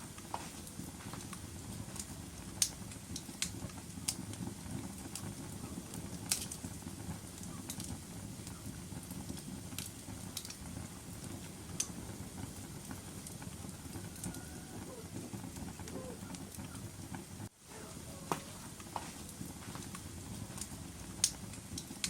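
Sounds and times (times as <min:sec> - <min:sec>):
fire flames rumbling: 0:00.0 - 0:22.0
fire popping and crackling: 0:00.0 - 0:22.0.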